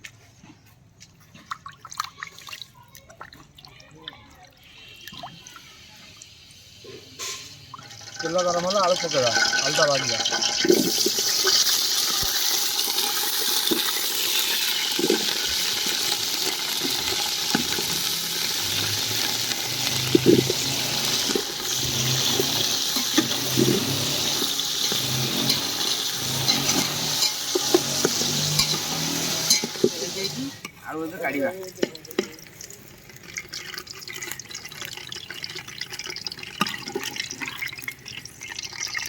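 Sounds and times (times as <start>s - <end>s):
potatoes sizzling in oil: 4.8s - 34.4s
spoon scraping a pan: 6.8s - 7.7s, 9.2s - 30.8s.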